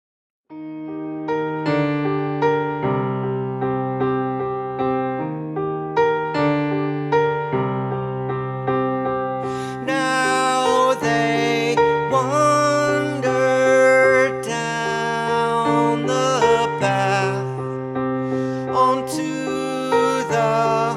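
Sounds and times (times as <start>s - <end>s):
electric piano chords: 0.6s - 20.9s.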